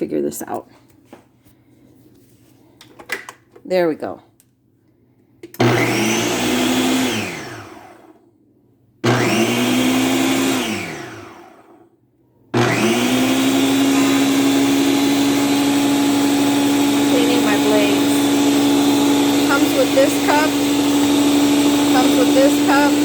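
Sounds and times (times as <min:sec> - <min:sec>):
blender motor whirring: 0:05.6 - 0:08.2, 0:09.0 - 0:11.8, 0:12.6 - 0:23.0.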